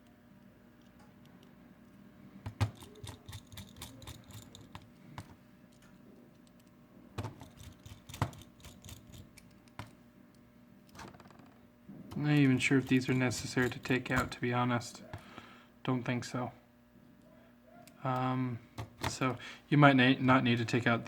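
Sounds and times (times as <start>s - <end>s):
screwdriver clicking on plastic: 2.4s - 5.3s, 12.1s - 14.3s.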